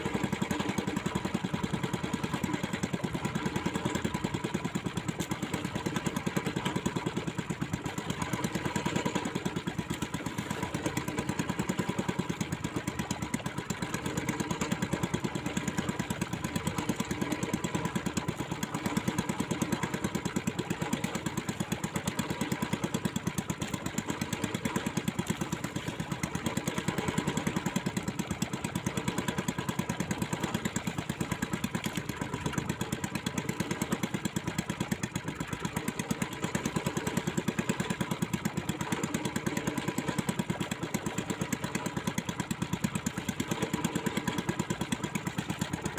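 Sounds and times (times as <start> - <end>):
boat engine running: 0.0 - 45.9.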